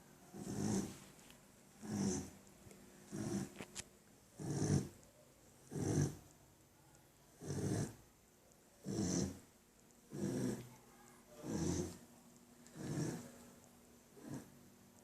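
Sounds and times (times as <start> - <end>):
dog snoring: 0.3 - 1.0, 1.8 - 2.4, 3.1 - 3.7, 4.4 - 5.0, 5.6 - 6.3, 7.3 - 8.0, 8.8 - 9.4, 10.1 - 10.7, 11.4 - 12.0, 12.6 - 13.4, 14.2 - 14.6.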